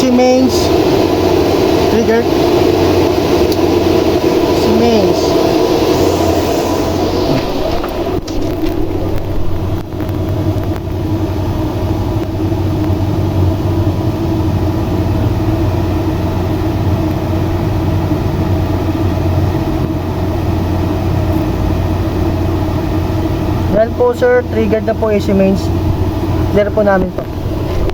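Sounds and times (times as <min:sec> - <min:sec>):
machinery running with low hum: 0:00.0 - 0:27.9.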